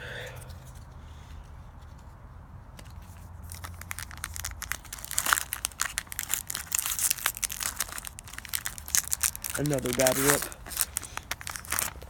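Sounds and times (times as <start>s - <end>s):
plastic wrapper crinkling: 3.4s - 12.0s.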